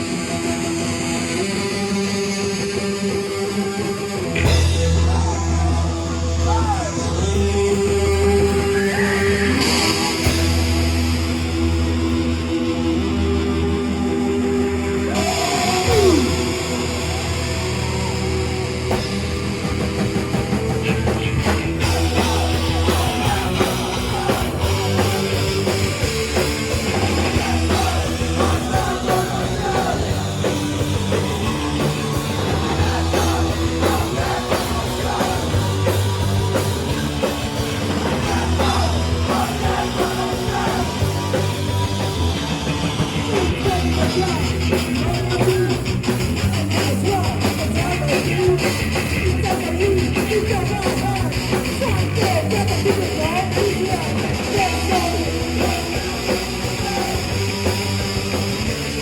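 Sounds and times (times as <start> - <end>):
punk rock band playing: 0.0 - 59.0
shouted vocals: 3.7 - 11.0, 12.7 - 58.0.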